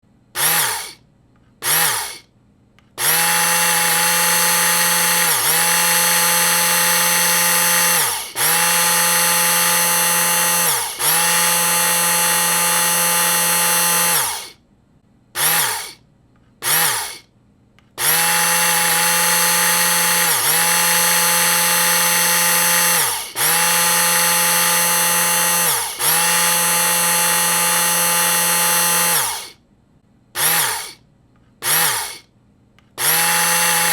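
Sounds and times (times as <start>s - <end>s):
blender motor whining: 0.4s - 1.0s, 1.6s - 2.2s, 3.0s - 14.6s, 15.4s - 16.0s, 16.6s - 17.2s, 18.0s - 29.6s, 30.4s - 31.0s, 31.6s - 32.2s, 33.0s - 33.9s.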